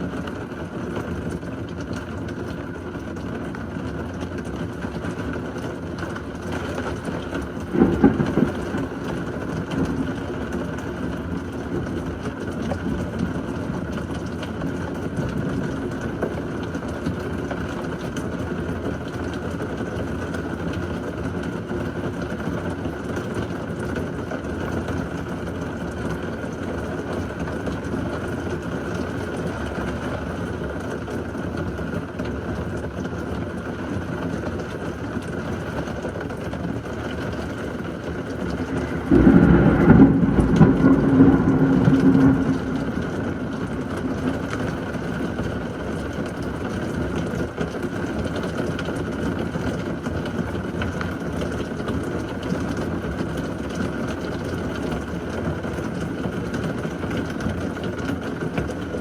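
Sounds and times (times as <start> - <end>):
heavy rain falling: 0.0 - 55.6
thunder clap and rumble: 6.1 - 19.2, 37.7 - 47.8.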